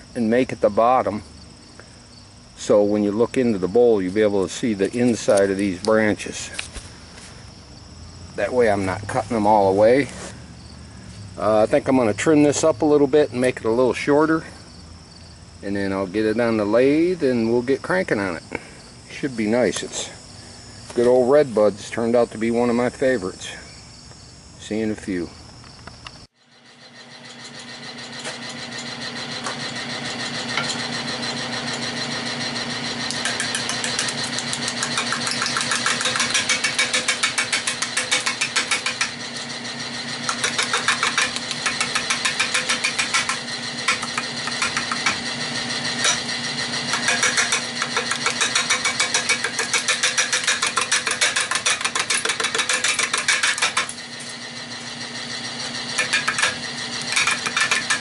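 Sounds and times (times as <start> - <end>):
lathe motor humming: 26.4 - 58.0
gouge chattering on wood: 33.1 - 39.2, 40.3 - 45.2, 46.9 - 53.9.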